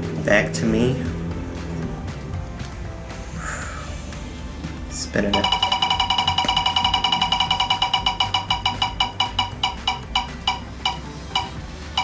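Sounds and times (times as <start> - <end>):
prize wheel ticking: 5.1 - 12.0.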